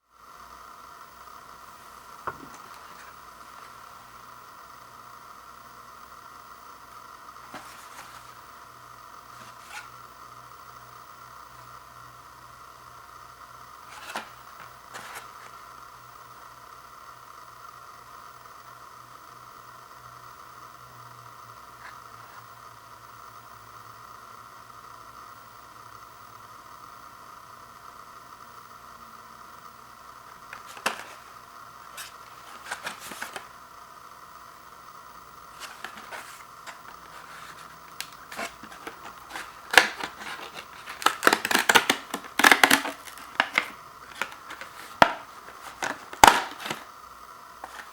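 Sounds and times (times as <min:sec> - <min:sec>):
steady background hum: 0:00.1 - 0:18.6, 0:28.4 - 0:47.9
plastic packaging clicks and crinkles: 0:13.9 - 0:15.6, 0:30.5 - 0:31.4, 0:32.0 - 0:33.5, 0:35.6 - 0:46.9, 0:47.6 - 0:47.9.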